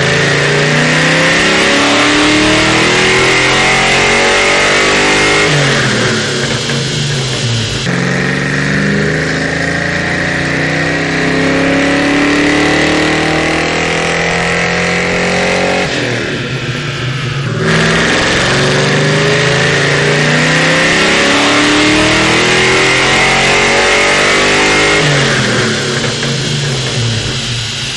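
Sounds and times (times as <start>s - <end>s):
car engine revving: 0.0s - 27.9s.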